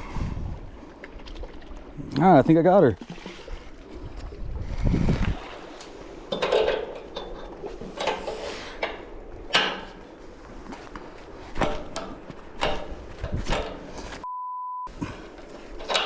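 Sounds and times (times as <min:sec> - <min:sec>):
gear clanking against metal: 0:15.2 - 0:16.0.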